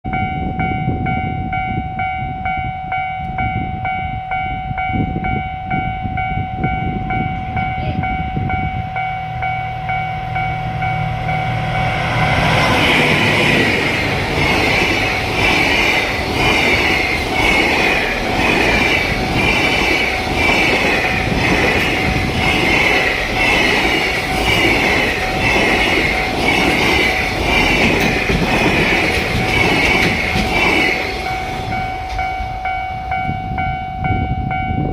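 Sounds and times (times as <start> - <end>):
level crossing warning bell: 0.1 - 34.9
freight train wheels clattering: 10.3 - 33.2.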